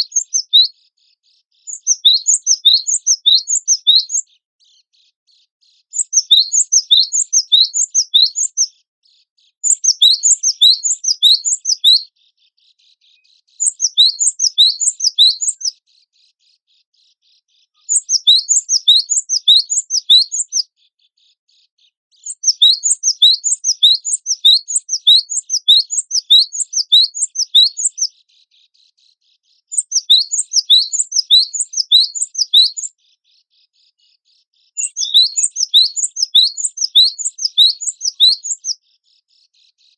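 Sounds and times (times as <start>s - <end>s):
bird singing rapid high notes: 0.0s - 0.7s, 1.7s - 4.2s, 6.0s - 8.7s, 9.6s - 12.1s, 13.6s - 15.7s, 17.9s - 20.6s, 22.2s - 28.1s, 29.7s - 33.0s, 34.8s - 38.8s.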